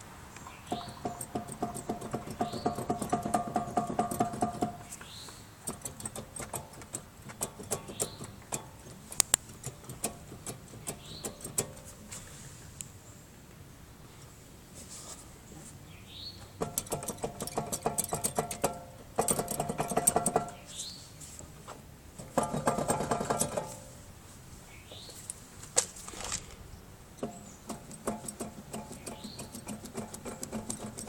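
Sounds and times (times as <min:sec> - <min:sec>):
wheel bearing grinding growl: 0:00.7 - 0:04.9.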